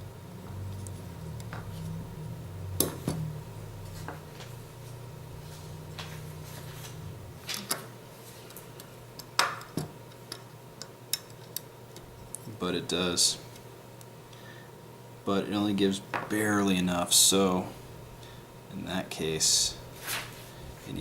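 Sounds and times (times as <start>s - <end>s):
low hum: 0.0s - 9.3s.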